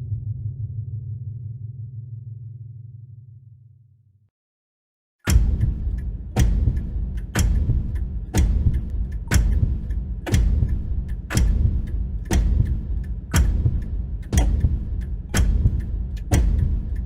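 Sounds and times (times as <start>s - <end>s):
steady low rumble: 0.0s - 2.8s, 5.3s - 17.0s
deep heartbeat thumps: 5.3s - 17.0s
faint tick: 5.3s - 17.0s.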